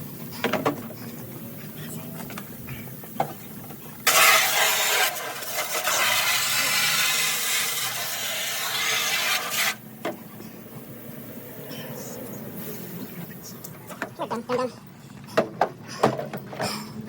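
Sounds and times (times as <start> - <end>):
water spraying from hose nozzle: 4.0 - 9.8.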